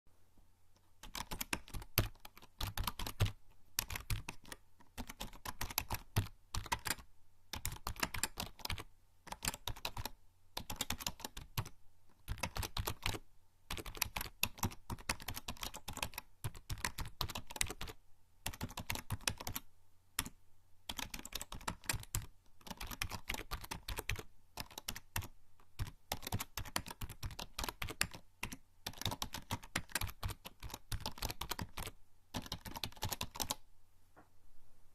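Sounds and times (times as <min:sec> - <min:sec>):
typing on computer keyboard: 0:01.0 - 0:20.3, 0:20.9 - 0:33.6.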